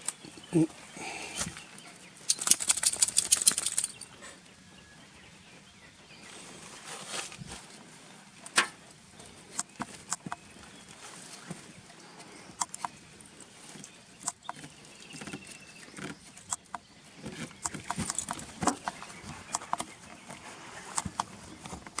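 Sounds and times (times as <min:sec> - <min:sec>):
sharp clicks: 0:02.3 - 0:04.1, 0:12.6 - 0:13.0.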